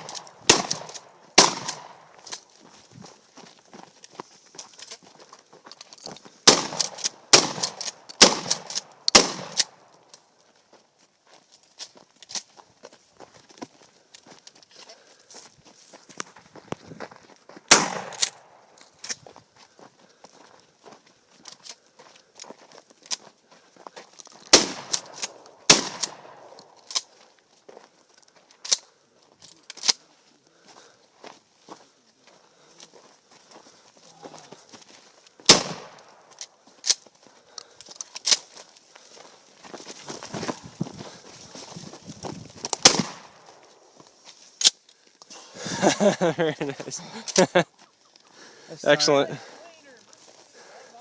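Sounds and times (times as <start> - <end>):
shotgun shots: 0.0 - 2.1, 6.4 - 9.8, 17.7 - 18.5, 24.5 - 26.6, 35.4 - 36.1, 42.8 - 43.5.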